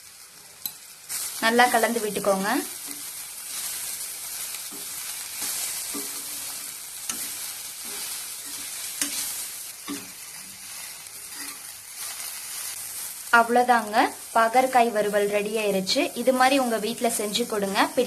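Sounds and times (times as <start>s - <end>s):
vegetables sizzling in oil: 0.0s - 18.0s
utensil scraping and tapping pan: 4.7s - 6.4s, 7.1s - 10.2s.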